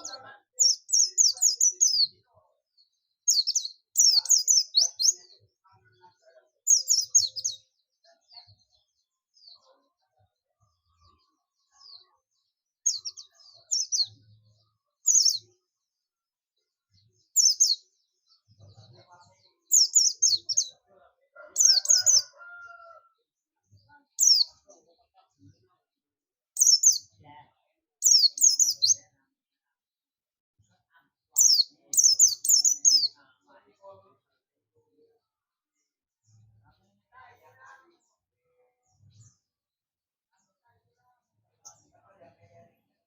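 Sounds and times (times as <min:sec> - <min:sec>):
bird chirping rapidly: 0:26.6 - 0:27.0, 0:28.0 - 0:29.0, 0:31.4 - 0:33.1.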